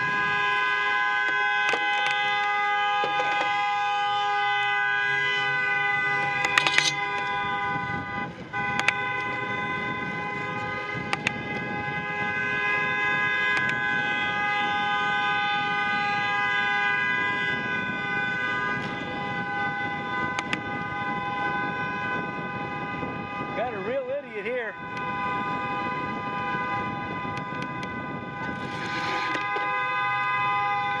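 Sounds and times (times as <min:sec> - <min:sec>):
car horn blaring: 0:00.0 - 0:31.0
sharp clicks: 0:08.8 - 0:09.0.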